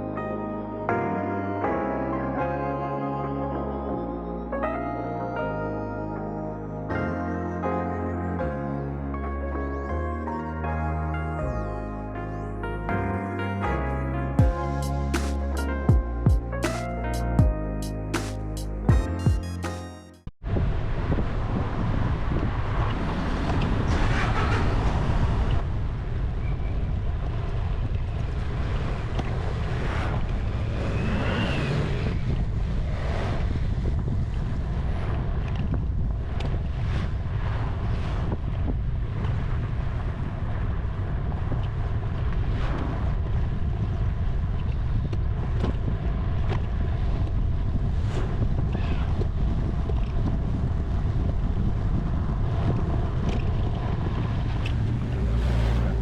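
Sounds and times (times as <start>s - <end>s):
wind buffeting microphone: 20.4s - 56.0s.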